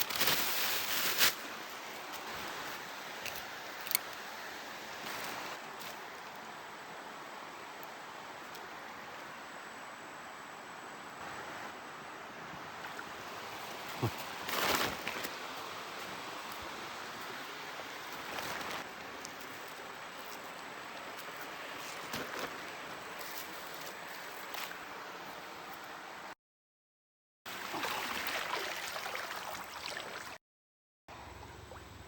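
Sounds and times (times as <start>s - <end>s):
river water running: 0.0s - 26.3s, 27.5s - 30.4s
water splashing: 27.5s - 30.4s.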